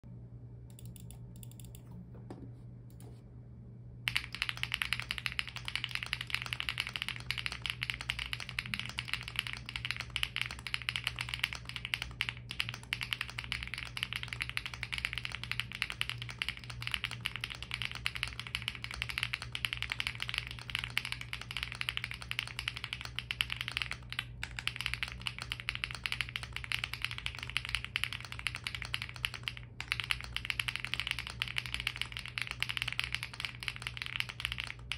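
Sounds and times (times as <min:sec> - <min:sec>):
mechanical keyboard typing: 0:00.7 - 0:02.0, 0:04.1 - 0:34.9.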